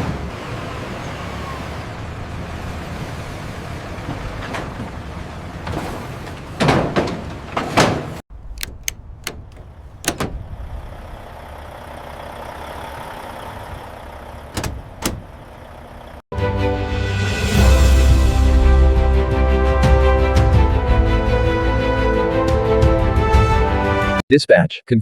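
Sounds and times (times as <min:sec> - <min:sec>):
sharp knocks and clatters: 0:06.6 - 0:10.6, 0:14.6 - 0:15.4.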